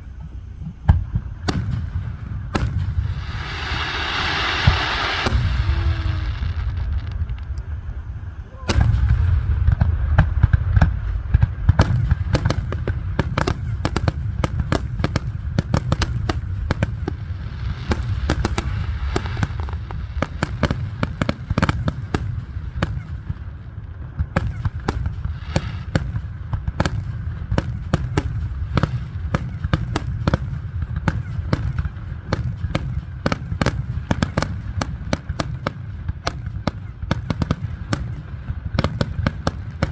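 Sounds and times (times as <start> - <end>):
deep rumbling booms: 0.0 - 39.9
fireworks crackling pops: 0.0 - 39.9
firework boom: 0.6 - 23.4.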